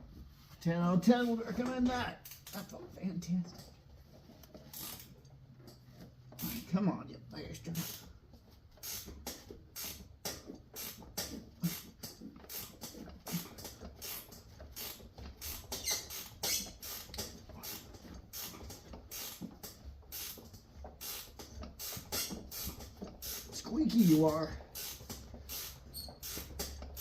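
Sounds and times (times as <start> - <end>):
ratchet wrench clicking: 2.2 - 2.7, 4.7 - 5.1, 7.7 - 8.1, 8.8 - 27.0
bolt squeaking: 15.4 - 17.0, 25.8 - 26.8.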